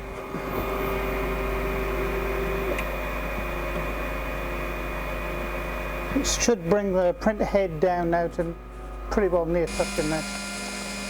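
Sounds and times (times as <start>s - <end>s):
printer motor hum and whine: 0.0s - 11.0s.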